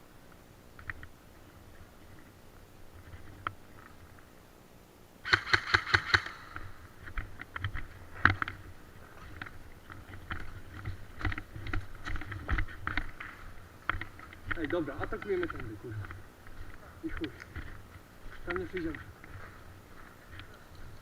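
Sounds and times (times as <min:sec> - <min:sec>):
airsoft gun firing: 0:05.2 - 0:06.7
sharp clicks and knocks: 0:05.3 - 0:17.8.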